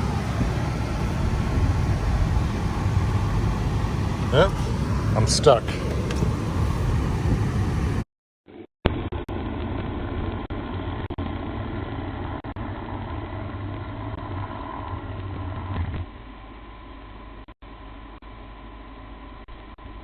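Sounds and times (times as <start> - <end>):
car engine running: 0.0 - 8.0.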